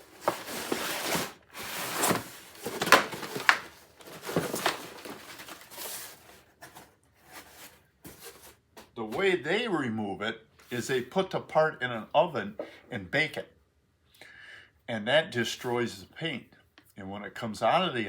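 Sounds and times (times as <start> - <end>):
rustling and scraping handling noise: 0.0 - 9.5.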